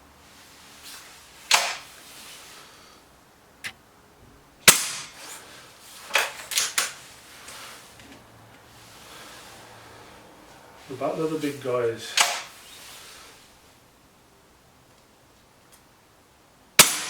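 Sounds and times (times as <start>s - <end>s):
air rifle shots: 1.5s - 1.9s, 4.7s - 5.2s, 12.2s - 12.5s, 16.8s - 17.0s.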